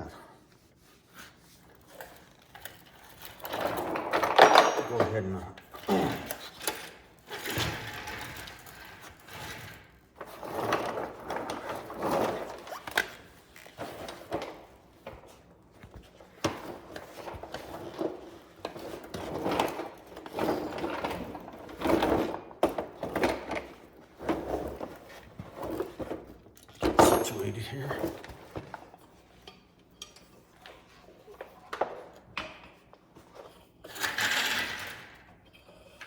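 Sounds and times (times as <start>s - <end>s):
hand tools clicking and rattling: 26.8s - 27.6s.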